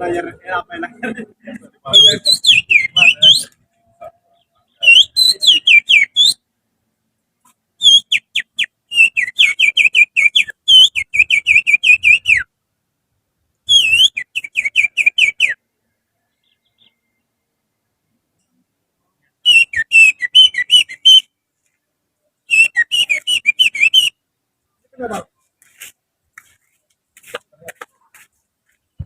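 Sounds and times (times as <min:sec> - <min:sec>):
finger whistling birdsong: 0:02.0 - 0:03.6, 0:04.4 - 0:06.4, 0:07.8 - 0:12.5, 0:13.7 - 0:15.6, 0:19.4 - 0:21.4, 0:22.5 - 0:24.2.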